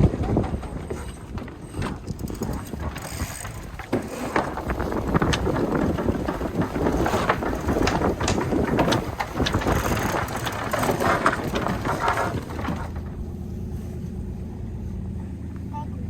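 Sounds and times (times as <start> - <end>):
wind buffeting microphone: 0.0 - 12.8
boat gear rattling: 0.0 - 13.9
engine low hum: 0.0 - 16.0.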